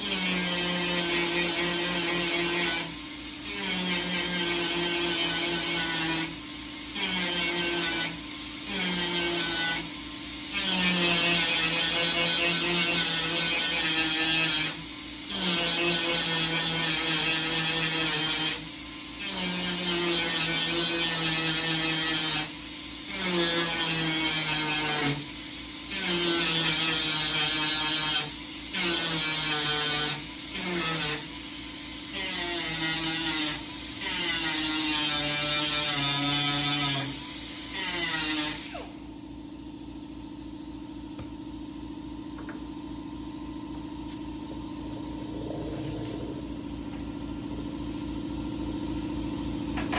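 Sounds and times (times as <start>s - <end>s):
steady low hum: 38.9s - 49.9s.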